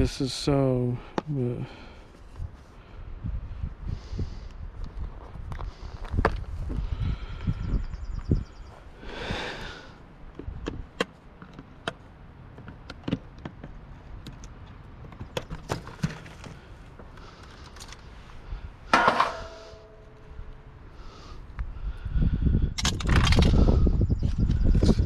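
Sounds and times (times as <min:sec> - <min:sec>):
clicks and taps of parts: 0:10.3 - 0:15.6.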